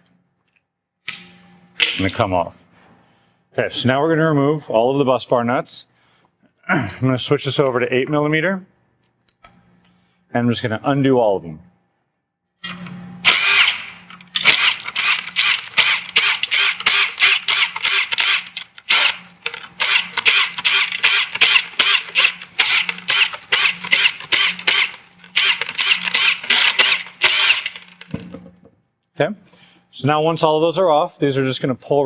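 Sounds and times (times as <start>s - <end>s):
ratchet clicking rapidly: 13.3s - 28.0s.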